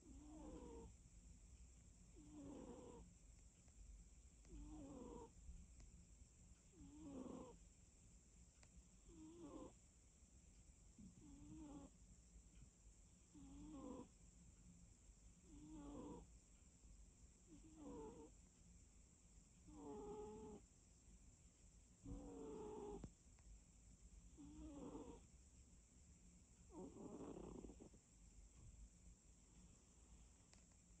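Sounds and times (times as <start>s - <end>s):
cat snoring: 0.0s - 0.9s, 2.1s - 3.1s, 4.5s - 5.3s, 6.7s - 7.6s, 9.0s - 9.8s, 11.0s - 12.0s, 13.3s - 14.1s, 15.4s - 16.3s, 17.5s - 18.3s, 19.6s - 20.6s, 22.0s - 23.0s, 24.3s - 25.3s, 26.7s - 28.0s
faint click: 30.4s - 30.9s.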